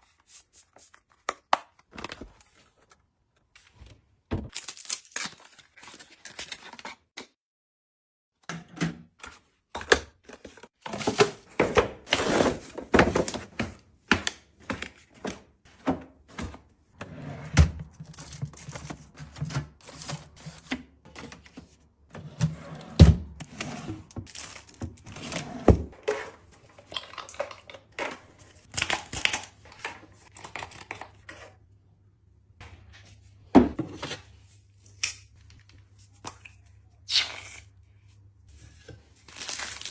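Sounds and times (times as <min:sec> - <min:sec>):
taps and clunks of supplies: 0:08.4 - 0:16.7.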